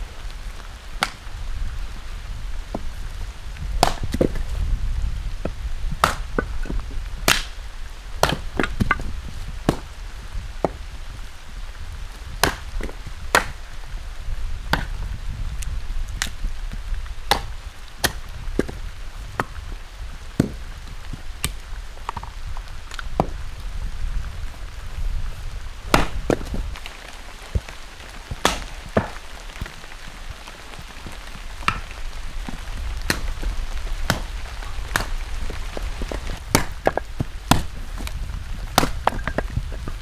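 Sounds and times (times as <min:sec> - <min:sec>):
sharp chopping knocks: 0:01.0 - 0:01.4, 0:03.8 - 0:04.6, 0:06.0 - 0:07.6, 0:08.2 - 0:10.0, 0:12.3 - 0:13.7, 0:14.7 - 0:15.1, 0:17.3 - 0:18.8, 0:20.4 - 0:20.6, 0:25.9 - 0:26.8, 0:28.4 - 0:29.8, 0:31.7 - 0:39.6.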